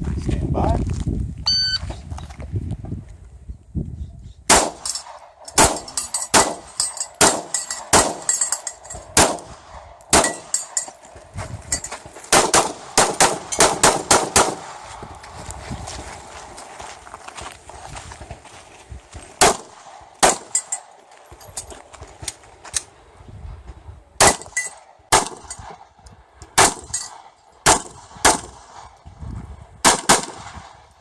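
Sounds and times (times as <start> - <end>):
pistol shots: 4.5 - 10.8, 12.3 - 14.9, 19.4 - 20.8, 24.2 - 25.8, 26.6 - 28.9, 29.8 - 30.8.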